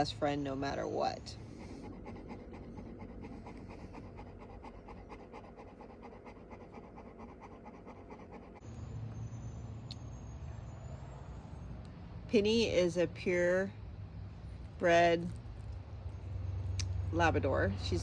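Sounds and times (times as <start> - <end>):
dog panting: 1.2 - 8.7.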